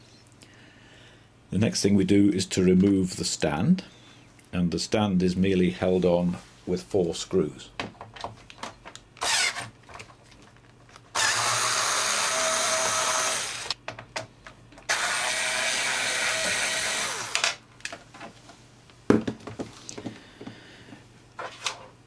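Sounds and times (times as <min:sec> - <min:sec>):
power driver running: 0:11.1 - 0:13.8, 0:14.9 - 0:17.6
sharp knocks of parts: 0:13.7 - 0:14.9.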